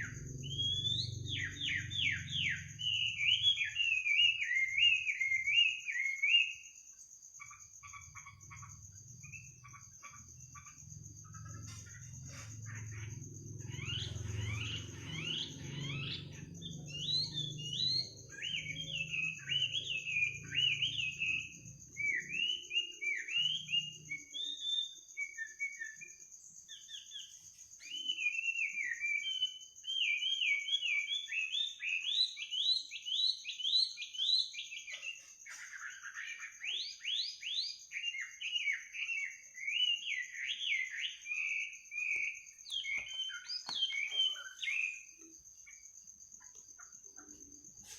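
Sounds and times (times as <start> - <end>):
high-pitched insect drone: 0.0 - 32.0
bird singing chirps and trills: 0.0 - 47.9.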